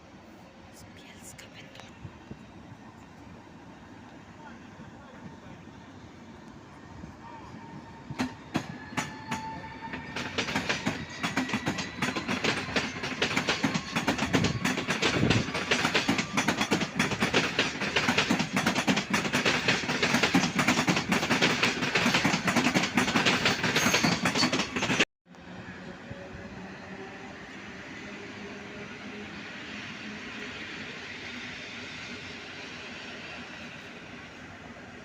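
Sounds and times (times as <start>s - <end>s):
train wheels clattering on rails: 8.1s - 25.0s.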